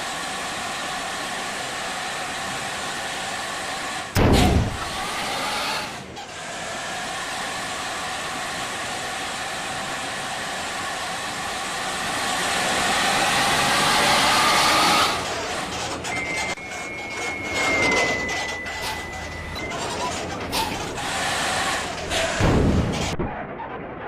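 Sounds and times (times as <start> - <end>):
bus engine and road noise: 0.0 - 23.8
high steady tone: 16.1 - 20.0.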